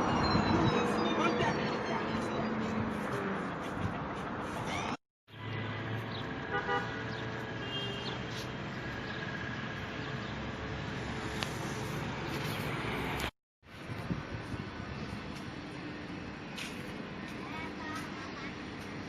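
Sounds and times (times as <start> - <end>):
road traffic noise: 0.0 - 19.0
car horn: 6.5 - 8.2.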